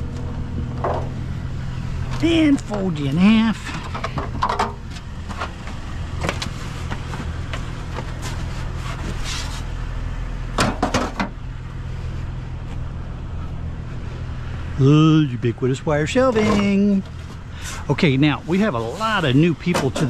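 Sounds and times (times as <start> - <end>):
vehicle engine idling: 0.0 - 20.0
scrap metal knocks and clanks: 3.6 - 6.4.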